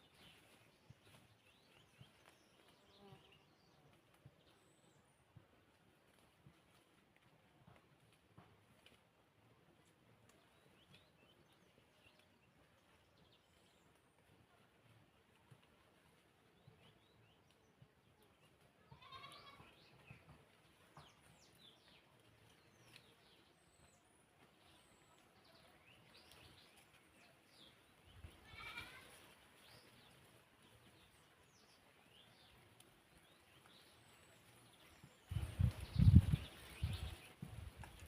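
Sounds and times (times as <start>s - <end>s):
goat bleating: 18.8s - 19.8s, 28.3s - 29.3s.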